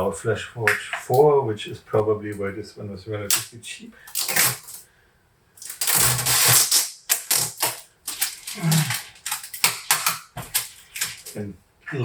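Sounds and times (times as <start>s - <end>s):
packing material rustling: 4.1s - 4.8s, 5.6s - 11.4s
packing material clicks and knocks: 5.6s - 11.4s.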